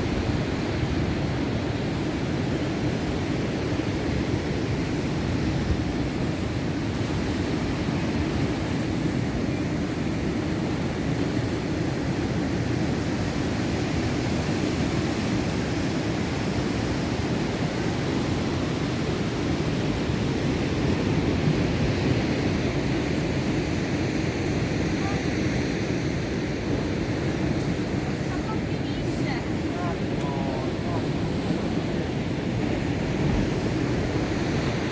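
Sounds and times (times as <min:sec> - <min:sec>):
heavy surf waves breaking: 0:00.0 - 0:34.9.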